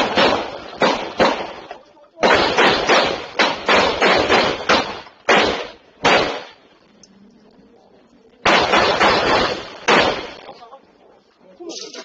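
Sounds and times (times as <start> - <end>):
gunshots: 0.0 - 6.8, 8.4 - 10.6.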